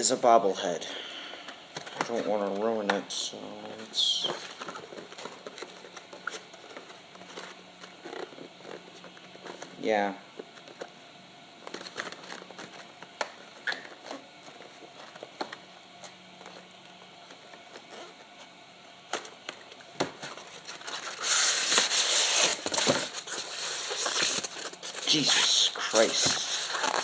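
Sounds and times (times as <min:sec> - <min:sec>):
packaging clicks and rustles: 0:04.1 - 0:09.7, 0:11.6 - 0:18.4, 0:19.1 - 0:27.0
wrapping crinkling and tearing: 0:20.2 - 0:27.0.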